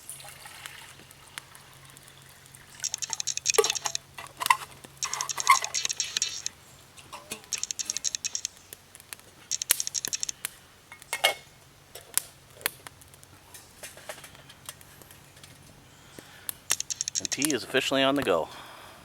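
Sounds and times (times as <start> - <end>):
small sharp clicks and taps: 2.8 - 6.5, 7.2 - 11.1, 16.2 - 17.6.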